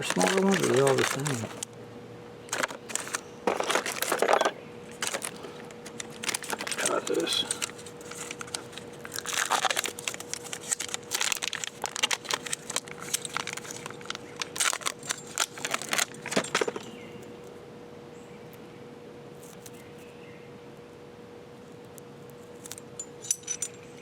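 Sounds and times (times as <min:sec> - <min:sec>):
small parts clicking and rattling: 0:00.0 - 0:01.7, 0:02.5 - 0:16.9, 0:22.6 - 0:24.0
faint steady hum: 0:00.0 - 0:24.0.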